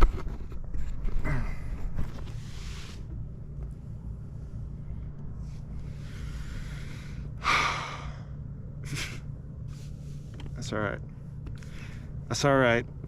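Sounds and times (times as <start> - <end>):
low hum: 0.0 - 13.0
man sighing heavily: 7.4 - 8.3.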